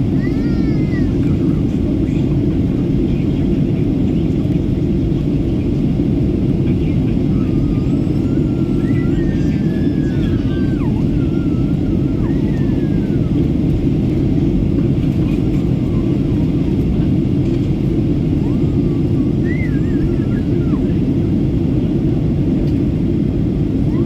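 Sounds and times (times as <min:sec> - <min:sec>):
airplane cabin rumble: 0:00.0 - 0:24.0
faint voices: 0:00.0 - 0:24.0.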